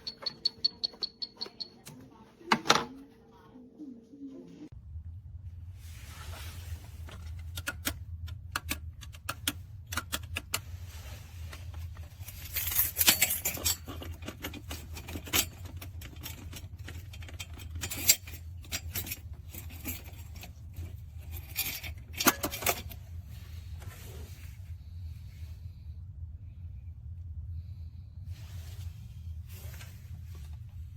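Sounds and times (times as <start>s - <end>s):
small safe clicks and rattles: 0.0s - 2.9s, 7.1s - 10.8s, 12.2s - 23.0s.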